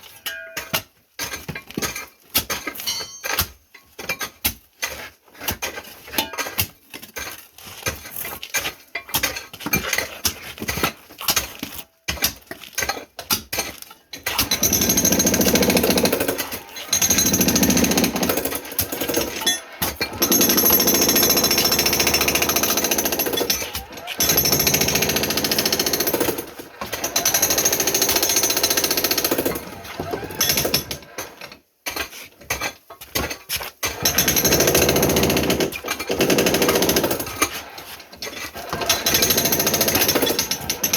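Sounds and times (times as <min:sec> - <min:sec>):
jackhammer breaking concrete: 0:14.2 - 0:31.4, 0:32.6 - 0:40.9.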